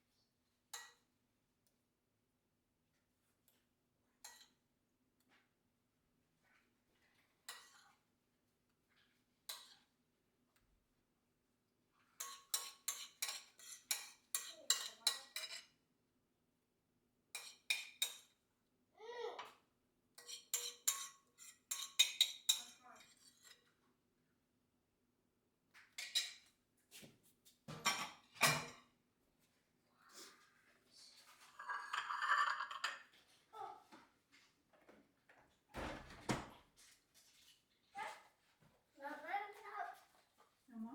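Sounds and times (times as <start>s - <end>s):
utensil clinking against bowl: 12.2s - 15.7s, 20.2s - 22.8s.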